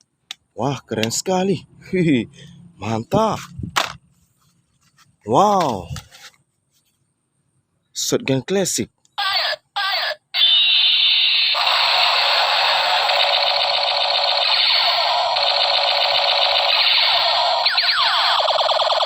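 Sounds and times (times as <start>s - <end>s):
toy gun electronic zap: 10.4s - 19.0s
warbling electronic tone: 10.5s - 19.0s.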